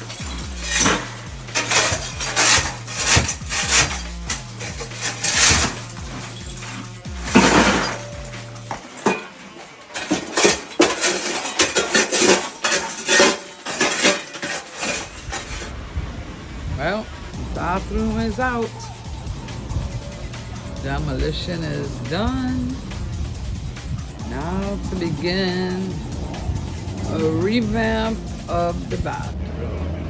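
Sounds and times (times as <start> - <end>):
background music with bass: 0.0 - 13.2, 14.8 - 30.0
ceramic tile smashing: 0.0 - 15.7.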